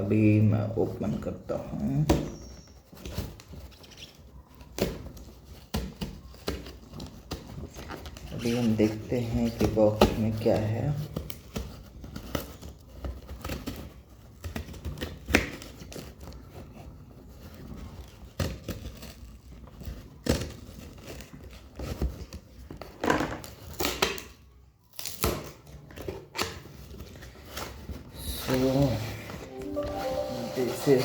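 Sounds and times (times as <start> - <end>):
packaging tearing and crinkling: 23.6 - 27.5.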